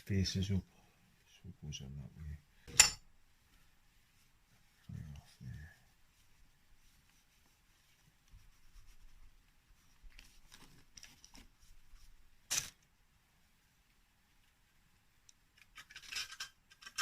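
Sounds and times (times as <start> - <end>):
metal parts clicking and rattling: 15.6 - 17.0.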